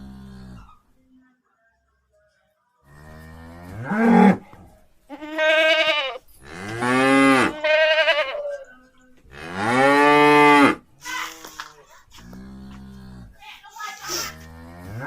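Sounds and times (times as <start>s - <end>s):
cattle mooing: 5.2s - 8.6s, 9.3s - 10.8s.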